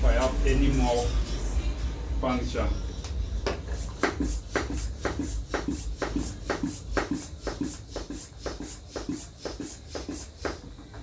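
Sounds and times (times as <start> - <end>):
hand pump strokes: 3.7 - 10.9.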